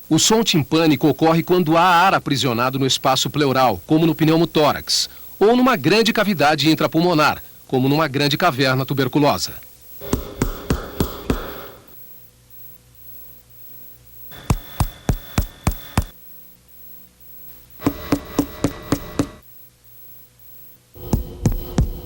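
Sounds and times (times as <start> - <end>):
finger tapping on chest: 10.0 - 11.7, 14.4 - 16.2, 17.8 - 19.4, 21.0 - 22.0.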